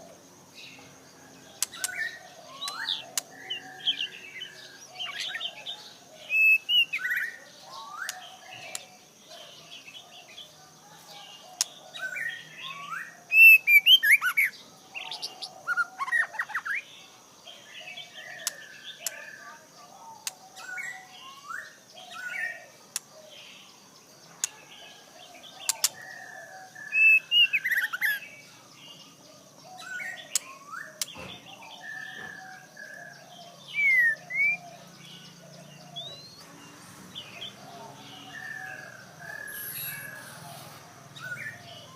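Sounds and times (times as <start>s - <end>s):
songbird singing whistled notes: 0.0s - 41.9s
bird sharp clicks: 1.6s - 3.4s, 8.0s - 8.9s, 11.6s - 11.8s, 25.6s - 26.0s, 30.3s - 31.4s.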